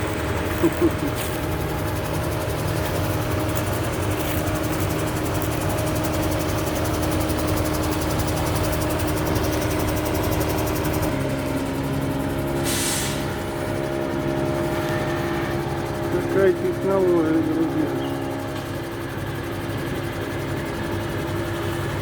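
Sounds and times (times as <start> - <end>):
machine engine running: 0.0 - 22.0
air hiss: 12.6 - 13.4.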